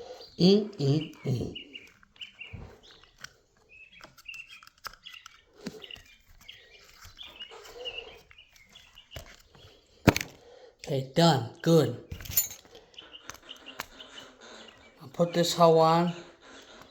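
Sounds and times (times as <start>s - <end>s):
birds chirping faintly: 0.0s - 16.9s
hand tools clicking: 12.1s - 13.9s.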